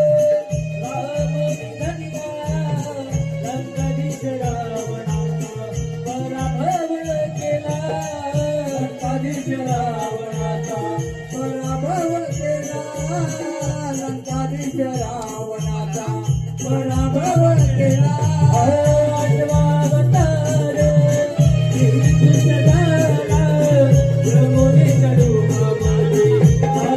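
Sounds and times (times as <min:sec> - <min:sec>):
jingling rattling percussion: 0:00.0 - 0:26.9
steady drum beat: 0:00.0 - 0:26.9.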